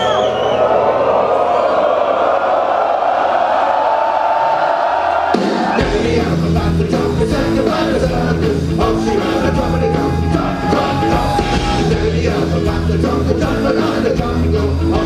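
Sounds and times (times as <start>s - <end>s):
drums on a steady beat: 5.3s - 15.0s
bass guitar: 5.7s - 15.0s
distorted electric guitar: 5.7s - 15.0s.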